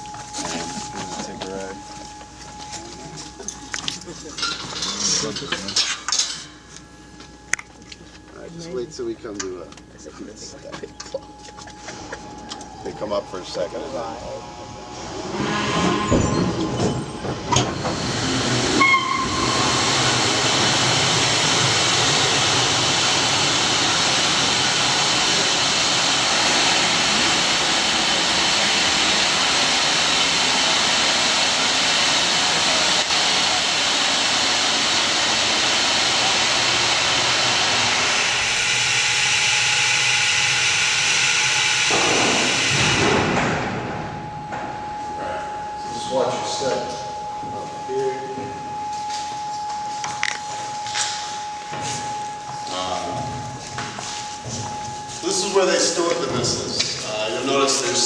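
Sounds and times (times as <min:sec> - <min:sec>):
loud hissing machine noise: 0:11.8 - 0:44.3, 0:49.9 - 0:58.0.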